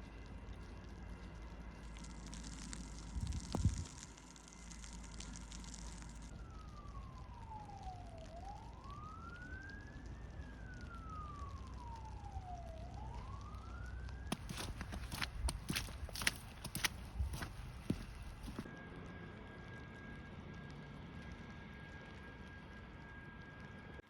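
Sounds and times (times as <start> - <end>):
emergency vehicle siren wailing: 6.3 - 14.3.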